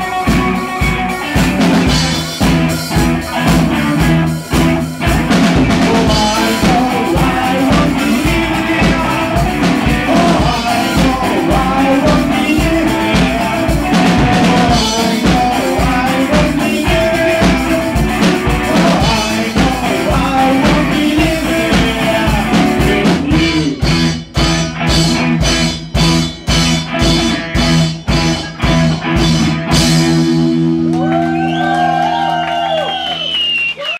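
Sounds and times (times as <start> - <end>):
drum kit: 0.0 - 33.2
rock band playing: 0.0 - 33.8
electric guitar: 0.0 - 33.9
person singing: 5.0 - 24.2.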